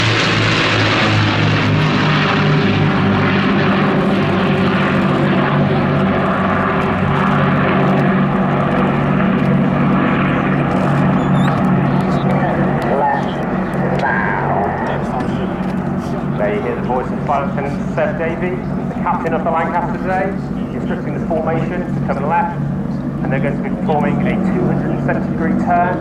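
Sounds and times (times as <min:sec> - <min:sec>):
propeller aircraft engines droning: 0:00.0 - 0:26.0.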